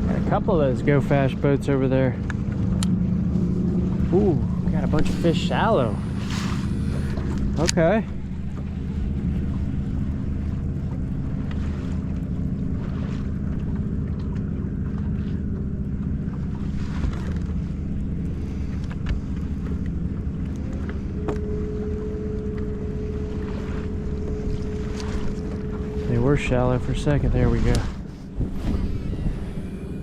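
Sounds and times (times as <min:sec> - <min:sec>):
steady higher tone: 0:00.0 - 0:12.9, 0:17.6 - 0:30.0
boat motor humming: 0:00.0 - 0:30.0
wind on microphone: 0:20.1 - 0:30.0.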